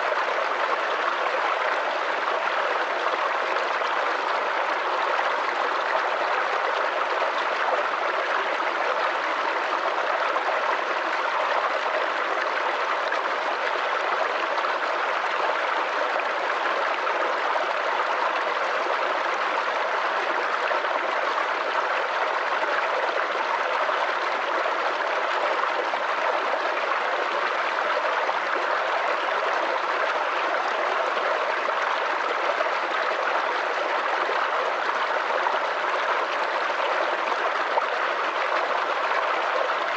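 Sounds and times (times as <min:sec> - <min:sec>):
creek babbling over stones: 0:00.0 - 0:39.9.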